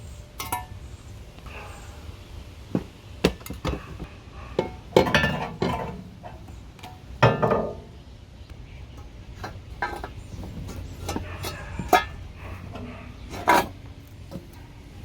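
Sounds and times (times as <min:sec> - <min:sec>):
metal tools clinking: 0:04.6 - 0:07.9, 0:08.9 - 0:14.6.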